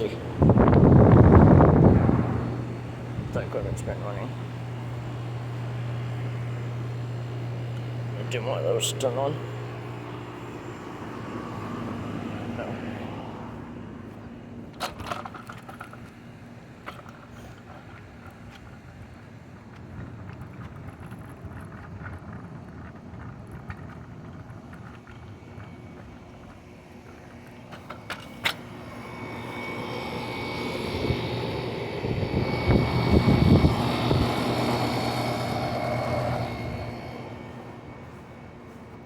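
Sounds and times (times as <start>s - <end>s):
engine passing by: 0.0s - 14.6s, 27.4s - 39.0s
air-conditioning units humming: 0.0s - 39.0s.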